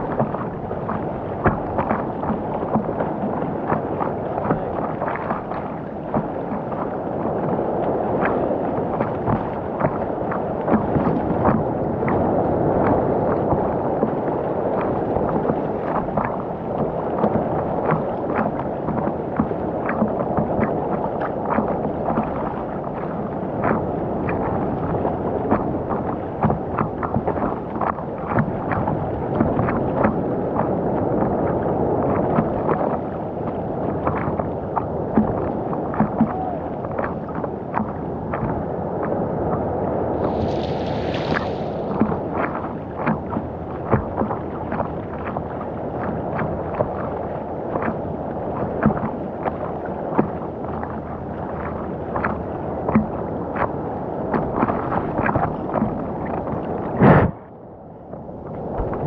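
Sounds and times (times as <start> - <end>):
muffled water rush: 0.0 - 59.0
small sharp water splashes: 40.2 - 57.3.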